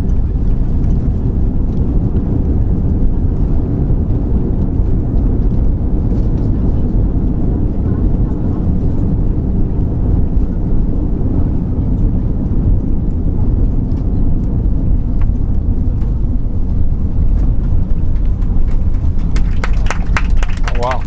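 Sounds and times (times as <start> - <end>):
airliner cabin rumble: 15.3 - 21.0.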